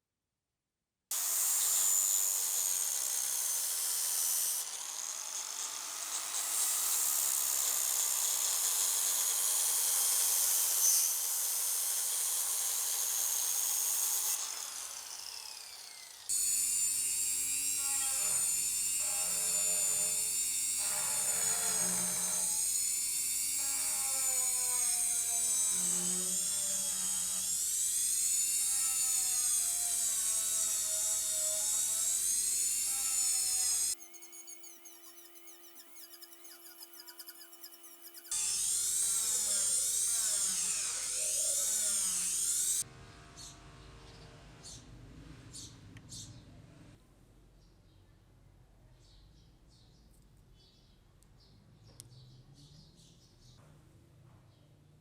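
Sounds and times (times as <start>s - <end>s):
power tool grinding knife blade: 1.1s - 44.2s.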